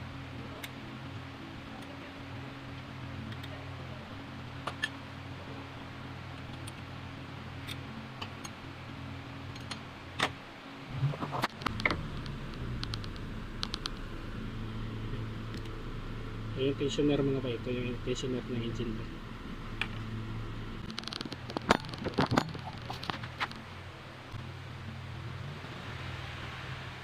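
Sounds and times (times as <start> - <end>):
steady low hum: 0.0 - 27.0
metallic rattle: 20.8 - 23.7.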